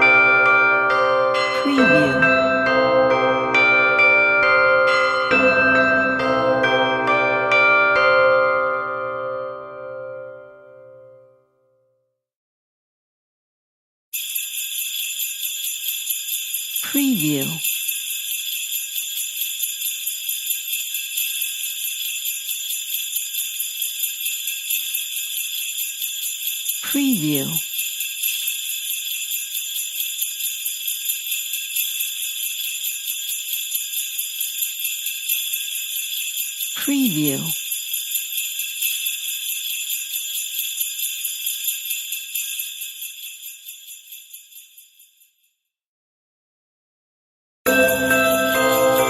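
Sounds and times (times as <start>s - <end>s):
jingle bells shaken: 1.3s - 6.8s, 14.2s - 45.5s, 47.7s - 49.0s.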